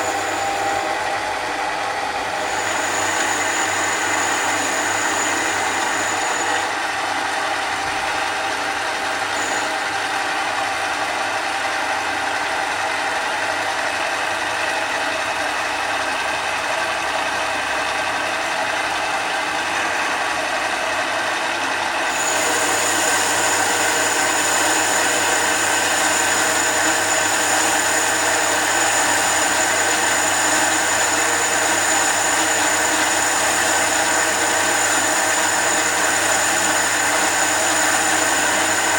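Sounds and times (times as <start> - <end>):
high whine: 0.0 - 1.1, 2.3 - 6.7, 9.3 - 9.8
lathe gear clatter and motor whine: 0.0 - 38.9.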